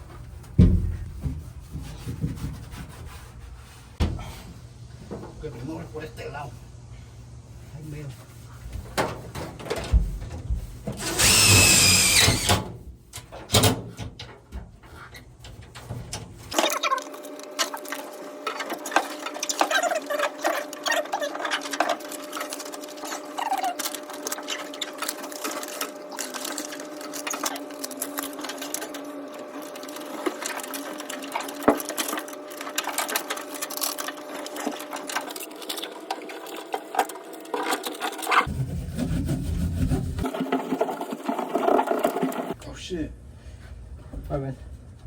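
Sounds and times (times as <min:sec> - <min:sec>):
irregular clicks and scrapes: 0:08.2 - 0:29.0, 0:29.6 - 0:42.6
small motor running: 0:11.0 - 0:12.5.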